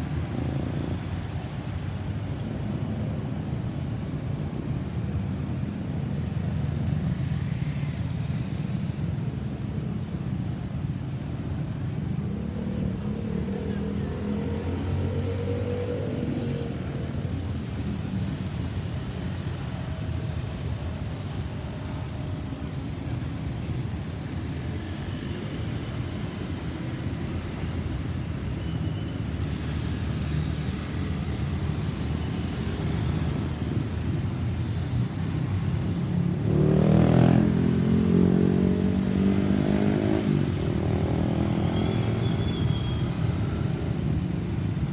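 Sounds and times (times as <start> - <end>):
vehicle engines passing: 11.9 - 28.4, 29.3 - 44.9.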